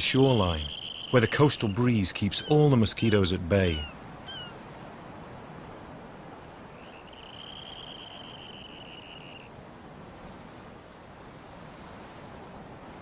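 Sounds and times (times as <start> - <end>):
thin high bird call: 0.0 - 4.6, 6.8 - 9.5
wind: 0.0 - 13.0.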